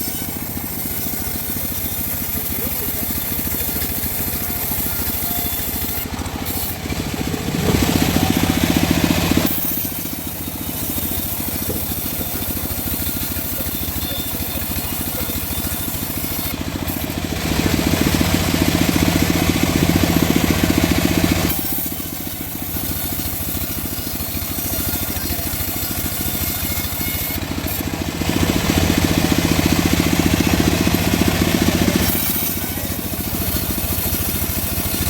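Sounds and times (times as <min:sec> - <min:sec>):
bandsaw sawing wood: 0:00.0 - 0:35.0.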